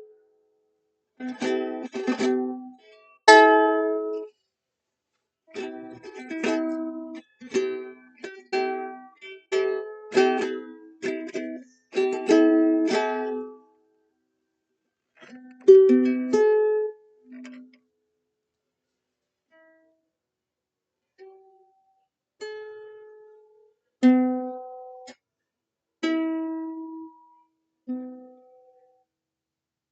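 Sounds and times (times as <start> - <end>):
ukulele strumming chords: 1.2 - 4.3, 5.5 - 13.7, 15.2 - 17.7, 24.0 - 25.1, 26.0 - 27.3, 27.9 - 28.5.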